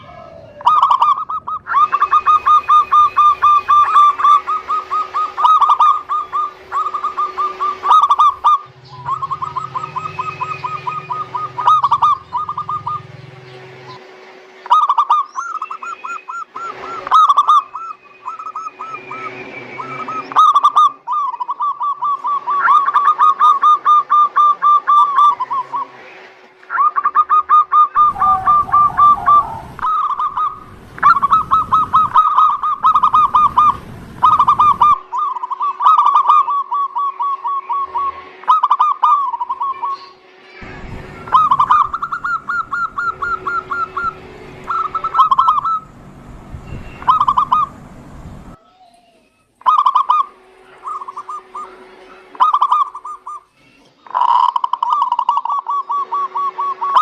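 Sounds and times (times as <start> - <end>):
low rumbling noise: 0.0 - 20.4, 28.0 - 35.2, 39.4 - 48.6
doves cooing: 0.0 - 26.0, 26.6 - 46.2, 46.8 - 53.5, 54.1 - 57.0.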